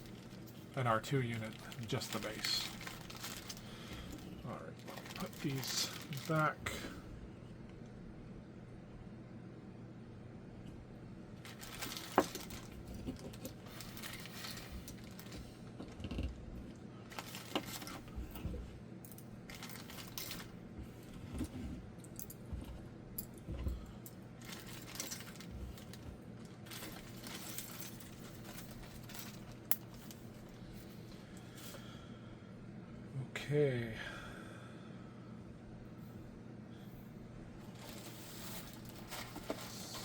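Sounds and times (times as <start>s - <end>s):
rustling: 0.0s - 6.5s, 11.4s - 15.6s, 19.5s - 21.1s, 24.4s - 31.7s, 37.6s - 40.0s.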